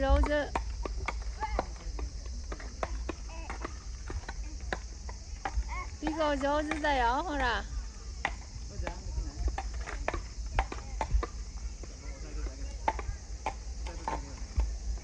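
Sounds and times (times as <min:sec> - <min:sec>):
jump rope slapping ground: 0:00.0 - 0:11.4.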